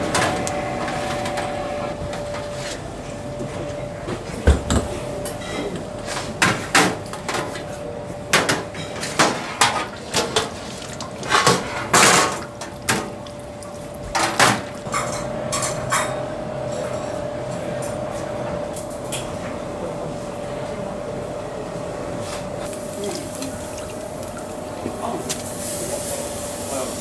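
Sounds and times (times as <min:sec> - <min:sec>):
steady hum: 0:00.0 - 0:02.5
dishes and utensils clinking: 0:08.3 - 0:13.0, 0:14.2 - 0:19.4.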